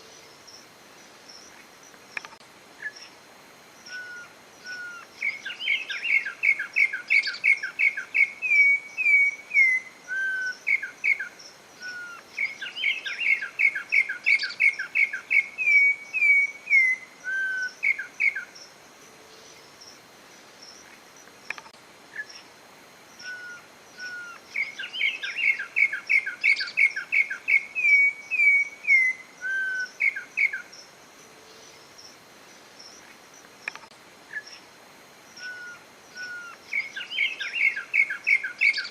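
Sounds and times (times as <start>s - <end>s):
bird singing whistled notes: 3.8s - 18.6s, 23.2s - 30.8s, 35.4s - 38.9s.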